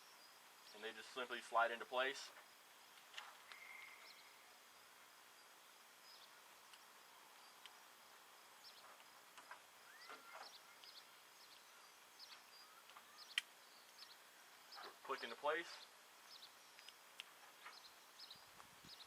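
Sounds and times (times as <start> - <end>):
faint chirps and ticks: 0.0 - 19.0.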